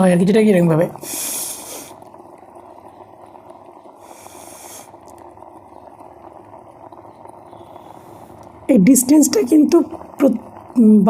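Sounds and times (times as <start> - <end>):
water boiling in steamer: 0.0 - 11.0
deep breaths: 1.0 - 2.1, 4.0 - 5.0.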